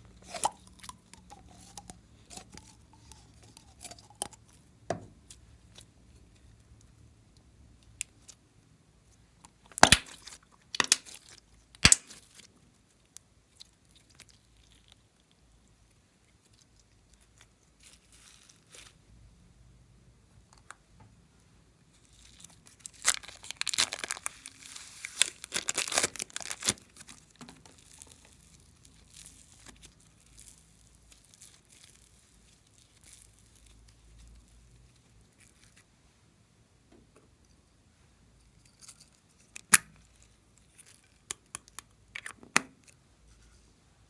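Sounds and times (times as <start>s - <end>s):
slime crackling and popping: 9.7s - 12.5s, 22.1s - 35.8s.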